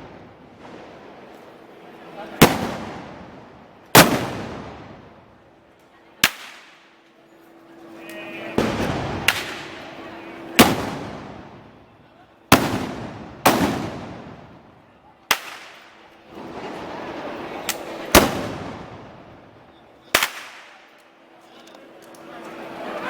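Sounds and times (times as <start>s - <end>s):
gunpowder bangs with echo: 2.4s - 5.1s, 6.2s - 6.9s, 8.6s - 11.8s, 12.5s - 14.6s, 15.3s - 16.0s, 17.7s - 19.1s, 20.1s - 20.9s.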